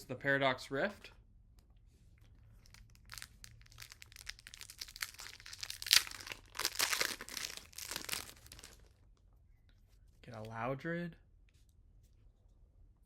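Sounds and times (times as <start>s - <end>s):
foil wrapper crinkling: 2.6s - 8.9s.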